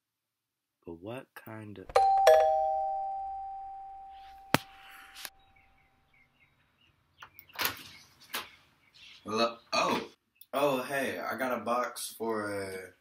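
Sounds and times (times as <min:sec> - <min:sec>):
two-tone doorbell chime: 0:02.0 - 0:04.6.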